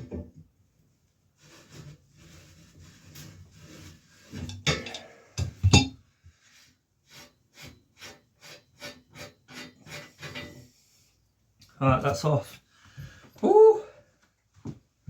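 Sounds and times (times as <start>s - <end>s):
metal tool clanks and rattles: 4.4s - 6.0s.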